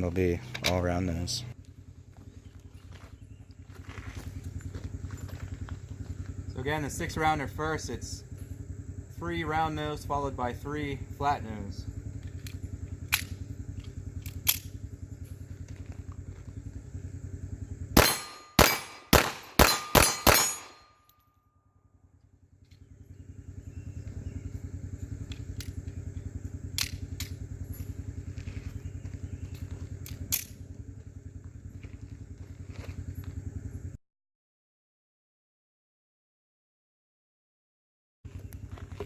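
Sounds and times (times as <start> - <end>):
low hum: 0.0 - 34.0, 38.3 - 39.0
pistol shots: 18.0 - 20.9.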